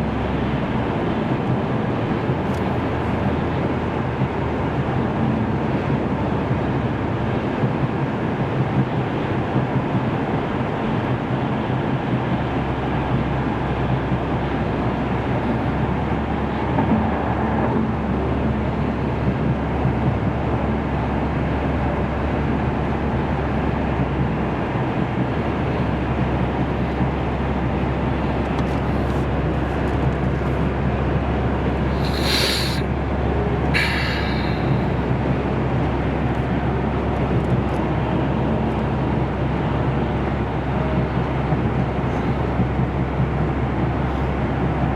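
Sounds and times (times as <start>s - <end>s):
car road and engine noise: 0.0s - 44.9s
low drone: 31.8s - 35.8s
short hissing bursts: 31.9s - 32.8s, 33.8s - 34.8s.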